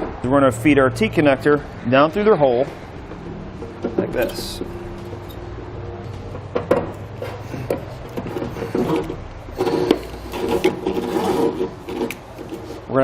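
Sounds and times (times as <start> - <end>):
steady low hum: 0.0 - 13.0
cable rubbing and scraping on metal: 3.6 - 5.5, 6.8 - 13.0.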